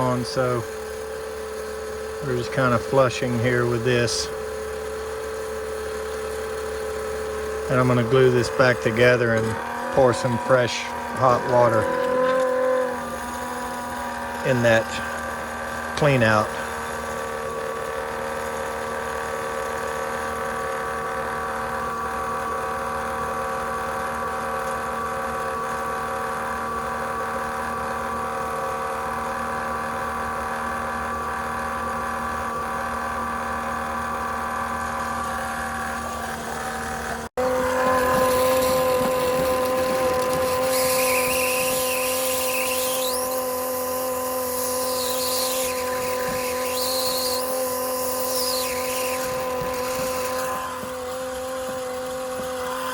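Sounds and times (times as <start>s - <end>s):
small electric motor whining: 0.0s - 52.9s
high squeaks: 37.6s - 43.5s, 44.5s - 51.2s.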